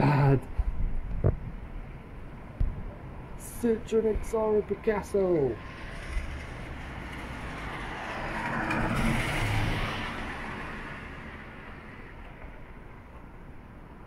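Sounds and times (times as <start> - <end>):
car driving past: 5.5 - 12.7.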